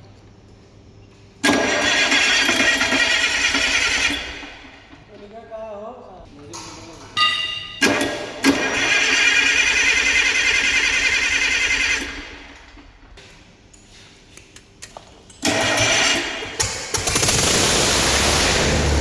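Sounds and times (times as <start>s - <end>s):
starter motor cranking: 1.4s - 4.8s, 8.4s - 12.4s, 15.4s - 19.0s.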